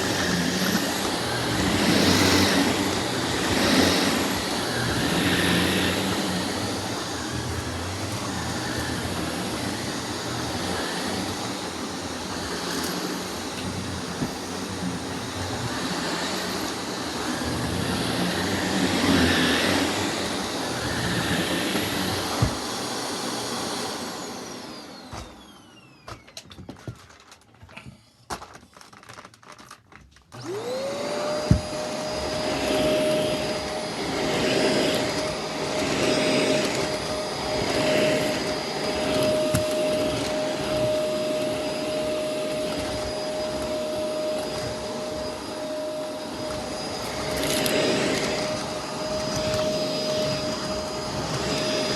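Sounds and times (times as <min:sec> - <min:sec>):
vacuum cleaner motor whine: 0:00.0 - 0:29.7, 0:30.3 - 0:51.9.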